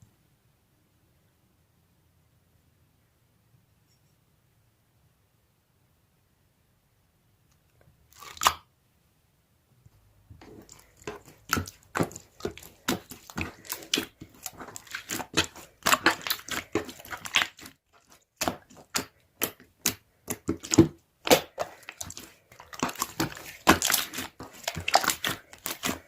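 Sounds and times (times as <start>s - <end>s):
slime crackling and popping: 10.6s - 26.0s.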